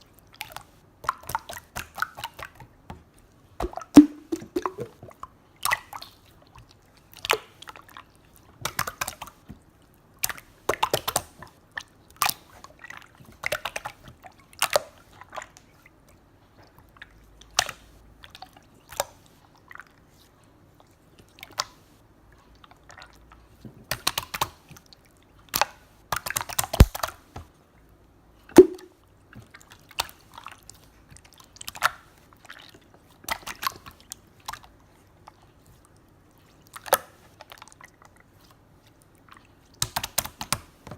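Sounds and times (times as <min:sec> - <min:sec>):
slime squishing clicks and pops: 0:26.2 - 0:27.0, 0:28.6 - 0:28.9.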